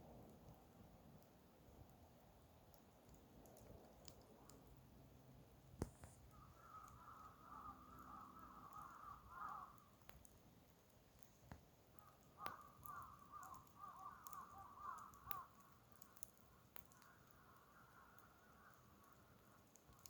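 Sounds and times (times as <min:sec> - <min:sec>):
campfire wood crackling: 0:00.0 - 0:20.0
faint bird calls: 0:06.2 - 0:10.1, 0:12.0 - 0:19.7.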